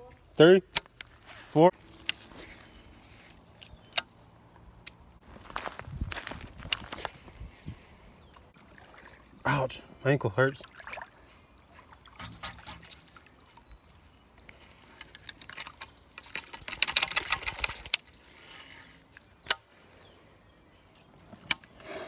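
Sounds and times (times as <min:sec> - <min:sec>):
sharp clicks: 0:03.6 - 0:04.1, 0:14.5 - 0:19.8
water splashing in a creek: 0:08.2 - 0:18.2.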